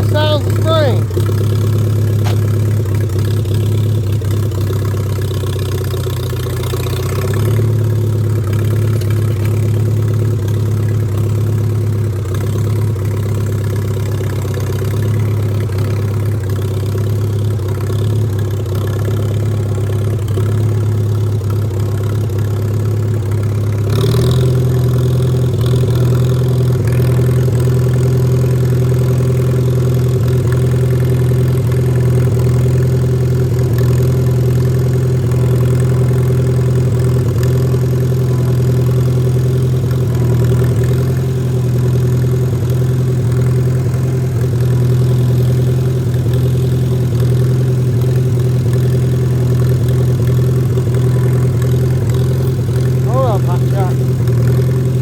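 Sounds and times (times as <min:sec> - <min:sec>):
tractor engine running: 0:00.0 - 0:55.0.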